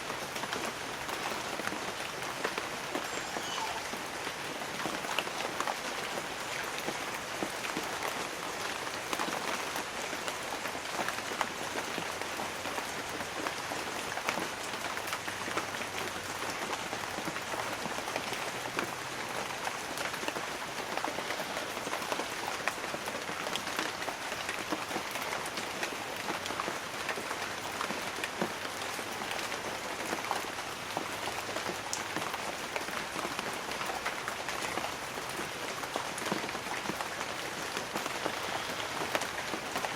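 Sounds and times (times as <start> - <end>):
light rain pattering on leaves: 0.0 - 39.9.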